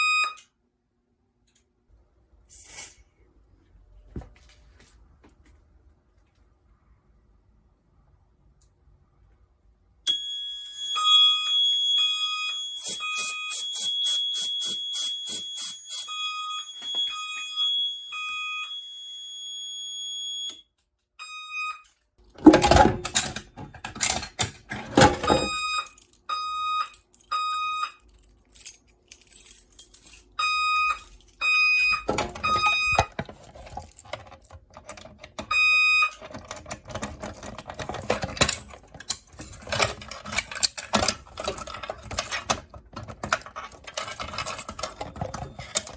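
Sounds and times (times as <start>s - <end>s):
fire alarm horn beeping: 0.0s - 0.5s, 10.1s - 22.0s, 25.1s - 28.0s, 30.4s - 33.1s, 35.4s - 36.3s.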